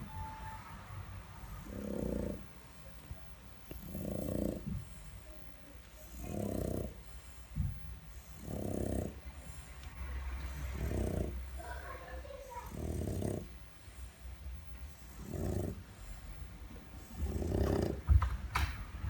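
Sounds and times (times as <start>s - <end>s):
dog snoring loudly: 1.4s - 2.7s, 3.6s - 14.1s, 14.8s - 18.3s.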